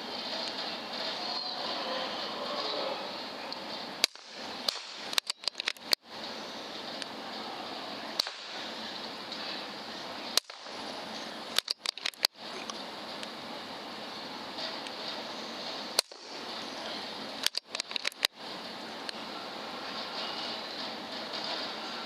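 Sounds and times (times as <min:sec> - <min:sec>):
air rifle shots: 0:04.0 - 0:06.0, 0:08.1 - 0:09.6, 0:10.2 - 0:12.4, 0:15.8 - 0:16.6.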